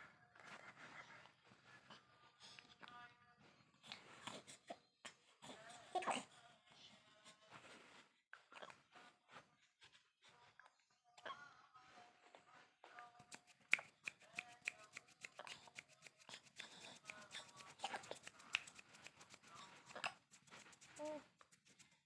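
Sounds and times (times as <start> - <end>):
baby making soft vocal sounds: 5.4 - 6.3, 20.9 - 21.3.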